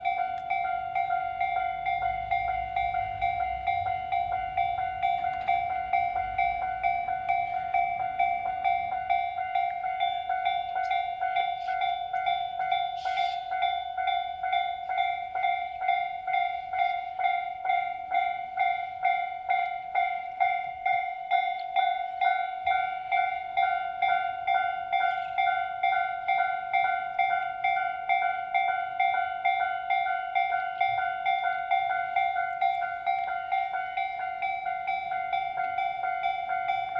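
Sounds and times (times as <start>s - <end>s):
level crossing warning bell ringing: 0.0s - 36.9s.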